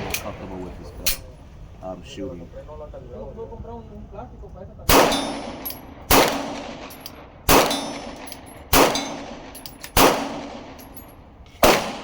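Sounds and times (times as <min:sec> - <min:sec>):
bullet clanging on steel target: 0:01.0 - 0:01.3, 0:05.1 - 0:05.9, 0:06.8 - 0:10.0, 0:10.6 - 0:11.6
pistol shots: 0:04.9 - 0:11.0, 0:11.6 - 0:12.0.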